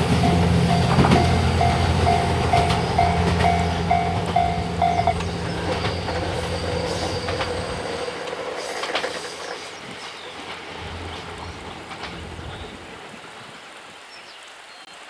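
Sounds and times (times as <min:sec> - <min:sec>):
train wheels clicking over rail joints: 0:00.0 - 0:12.8
low train engine hum: 0:00.0 - 0:13.5
level crossing electronic bell: 0:00.2 - 0:05.2.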